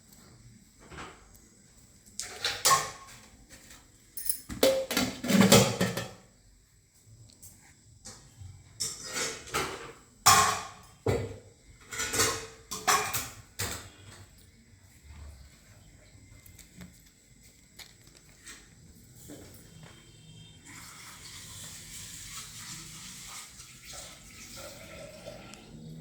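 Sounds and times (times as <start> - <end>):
sharp knocks and clattering: 2.5 - 6.3.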